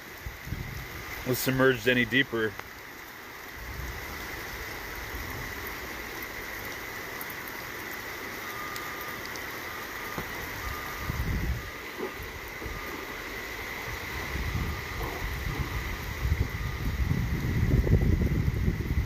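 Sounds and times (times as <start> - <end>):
floodwater rushing: 0.0 - 19.0
vehicle engine rumble: 3.6 - 19.0
short faint beeps: 8.4 - 13.2.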